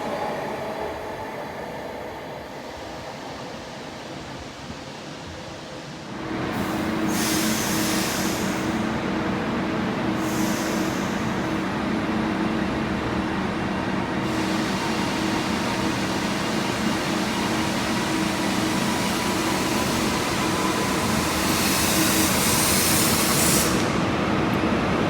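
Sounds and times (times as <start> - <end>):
train engine humming: 0.0 - 25.0
hiss: 6.6 - 8.9, 10.2 - 11.6, 14.2 - 24.0.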